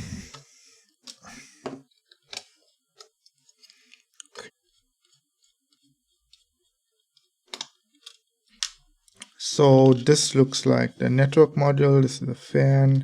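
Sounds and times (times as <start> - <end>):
faint clicks and taps of parts: 0.3 - 10.2.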